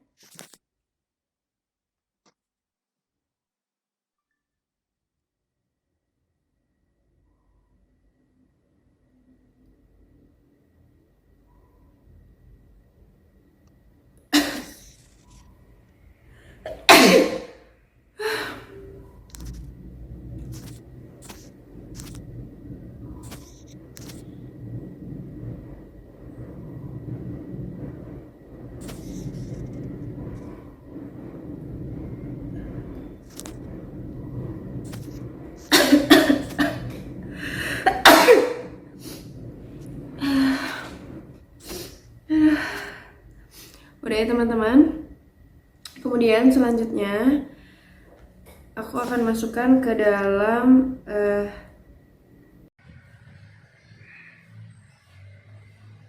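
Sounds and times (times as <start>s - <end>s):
person sneezing: 16.7s - 17.6s.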